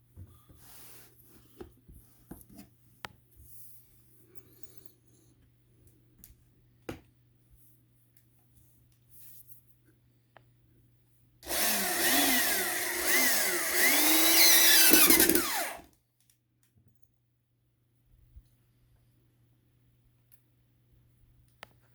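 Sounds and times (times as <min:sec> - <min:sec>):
power drill driving a screw: 0:11.4 - 0:15.9.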